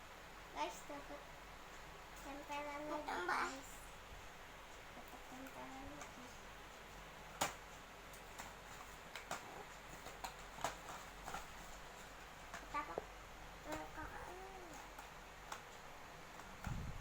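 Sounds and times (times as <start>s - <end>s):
clicks and knocks of handled objects: 7.3s - 14.0s.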